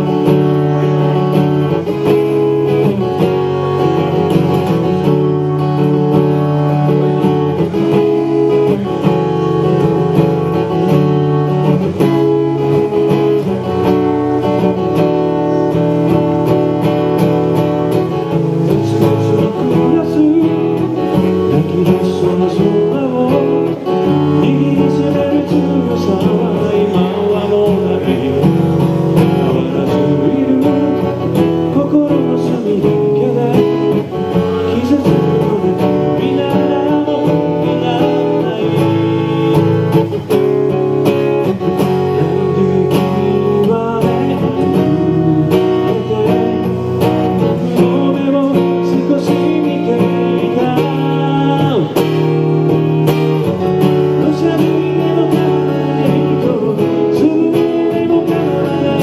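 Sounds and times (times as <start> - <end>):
acoustic guitar strumming: 0.0 - 59.0.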